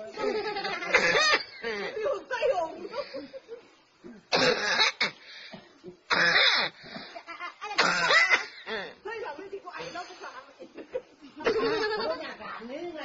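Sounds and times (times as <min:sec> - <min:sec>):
person coughing: 0:06.1 - 0:06.8, 0:07.8 - 0:08.9.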